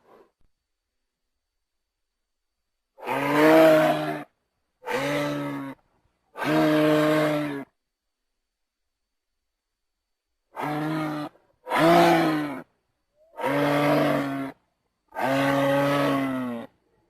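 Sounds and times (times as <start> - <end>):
low pitched animal calls: 3.0 - 5.8, 10.5 - 16.8.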